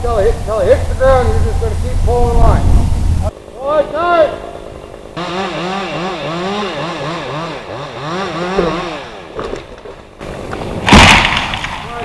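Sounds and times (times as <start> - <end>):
chainsaw cutting under load: 4.5 - 10.0.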